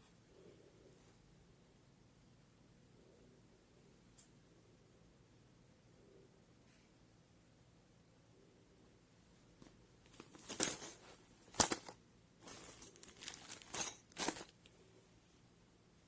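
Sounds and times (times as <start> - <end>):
rustling and scraping: 9.6 - 14.8.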